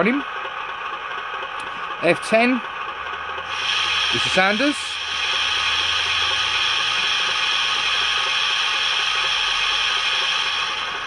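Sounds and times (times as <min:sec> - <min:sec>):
hiss of air-blown sand: 0:03.5 - 0:11.0.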